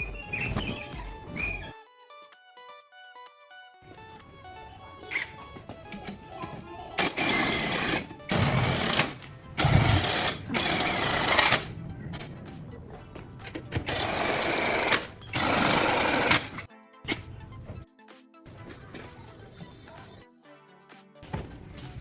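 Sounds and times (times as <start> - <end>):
music: 0.0 - 22.0
metalworking power tool: 7.0 - 11.7, 13.8 - 16.6.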